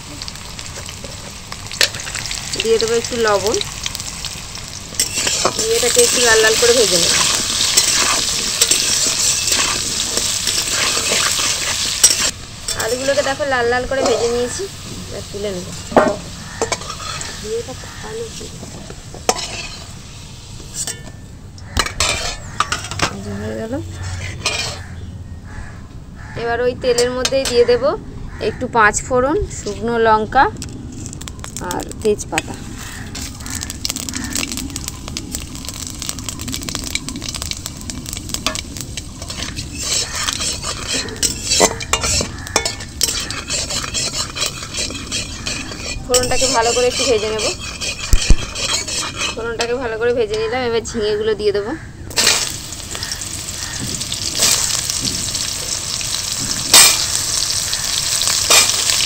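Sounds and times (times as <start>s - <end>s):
potatoes sizzling in oil: 0.0s - 24.9s, 31.0s - 51.2s, 52.1s - 59.0s
spatula scraping a pan: 5.0s - 14.6s, 15.8s - 20.0s, 21.8s - 24.9s, 37.0s - 50.6s, 52.2s - 59.0s
sharp knock on pan: 15.9s - 16.8s
metal spatula clinking on pan: 39.2s - 50.5s.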